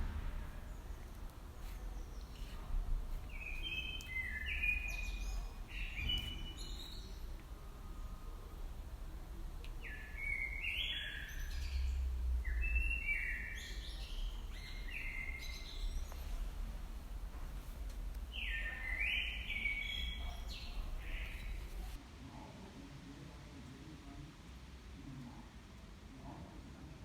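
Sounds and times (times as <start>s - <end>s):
low background rumble: 0.0s - 10.5s, 11.2s - 22.0s.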